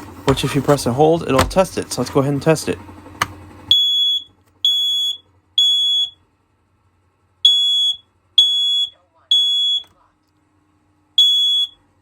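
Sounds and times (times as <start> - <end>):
high-pitched smoke alarm beeps: 3.7 - 6.2, 7.5 - 9.9, 11.2 - 11.8.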